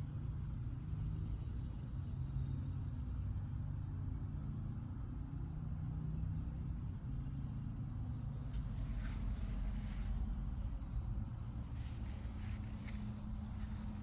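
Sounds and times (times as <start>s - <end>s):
steady low rumble: 8.3s - 14.0s.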